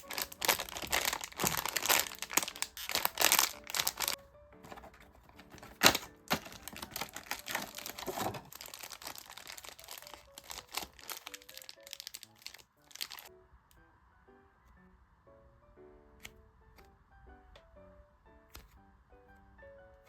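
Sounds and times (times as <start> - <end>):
plastic packaging crinkling: 0.0 - 13.3
soft background music: 0.0 - 20.0.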